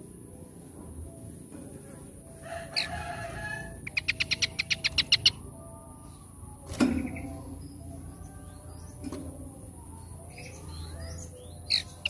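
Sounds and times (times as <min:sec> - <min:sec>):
small songbird singing: 0:02.6 - 0:12.0.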